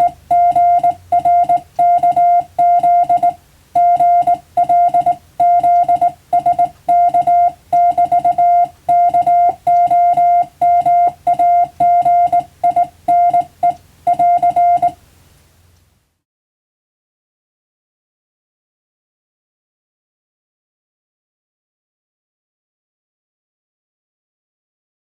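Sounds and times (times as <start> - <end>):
morse code tone: 0.0 - 15.0
faint low hum: 0.0 - 16.2.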